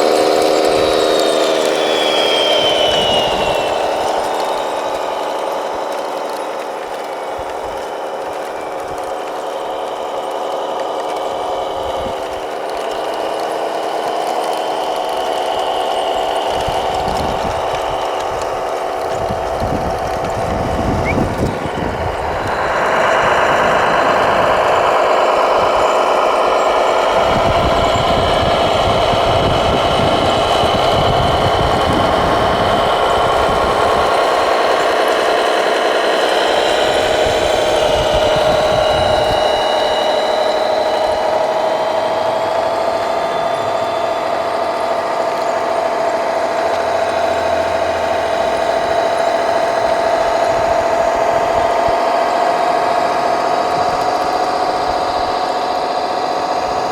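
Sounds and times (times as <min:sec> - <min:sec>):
electric motors whining: 0:00.0 - 0:56.9.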